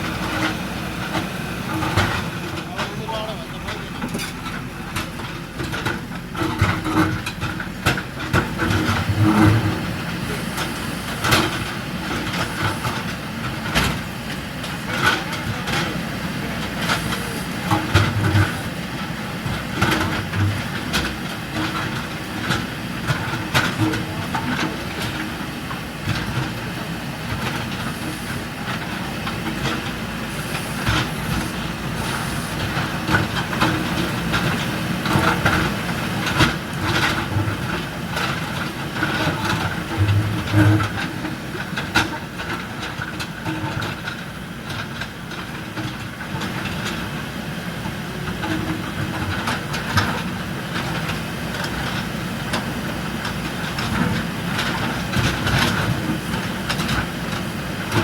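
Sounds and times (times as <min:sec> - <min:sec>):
diesel engine running: 0:00.0 - 0:58.0
metallic clanks and knocks: 0:00.2 - 0:16.0, 0:28.7 - 0:47.1.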